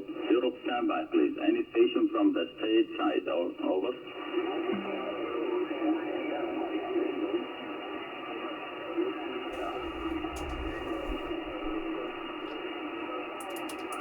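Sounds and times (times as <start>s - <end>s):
faint garbled radio voices: 0.0s - 14.0s
hiss and low rumble: 9.5s - 12.8s
radio band noise: 9.6s - 12.6s.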